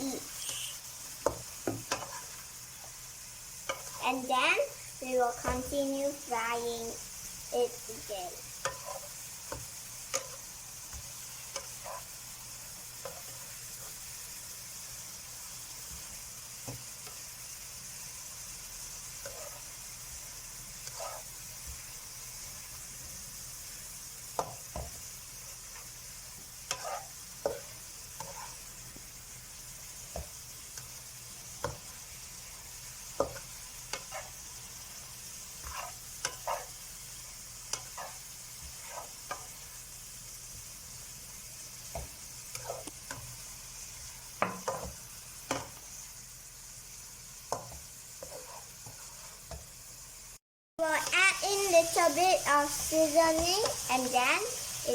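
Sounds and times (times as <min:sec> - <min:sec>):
spatula scraping a pan: 0:00.0 - 0:02.9, 0:03.6 - 0:04.3, 0:07.6 - 0:14.1, 0:18.9 - 0:22.5, 0:25.7 - 0:29.0, 0:29.9 - 0:39.8, 0:41.6 - 0:46.1, 0:47.4 - 0:49.7
food sizzling in a pan: 0:00.0 - 0:54.9.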